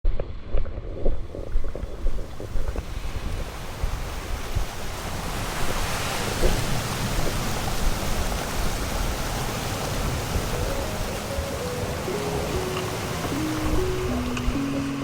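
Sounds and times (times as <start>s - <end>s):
wind on microphone: 0.1s - 15.0s
sea surf: 1.9s - 15.0s
music: 10.6s - 15.0s.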